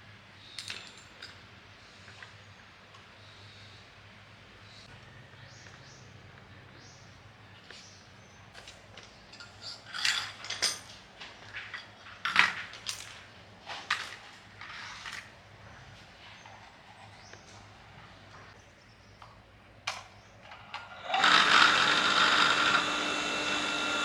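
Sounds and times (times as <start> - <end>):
metal tools clinking: 0.6 - 1.4, 8.6 - 13.2.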